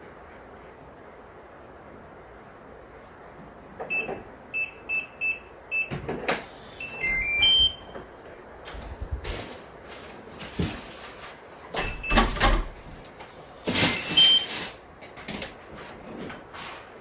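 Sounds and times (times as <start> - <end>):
electronic tone jingle: 6.8 - 7.9
keypad beeps: 6.8 - 7.9.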